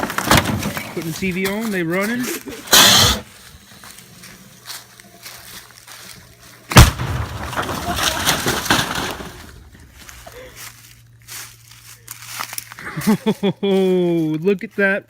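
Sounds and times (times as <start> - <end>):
firework bang: 6.7 - 8.5.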